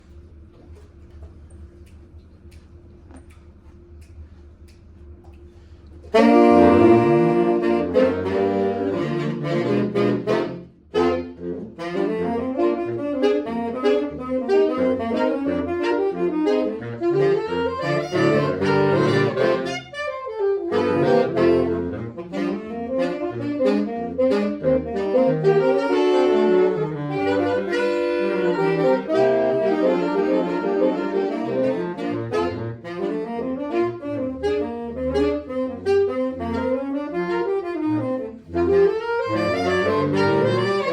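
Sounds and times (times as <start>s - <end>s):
saxophone quartet playing: 4.7s - 40.9s.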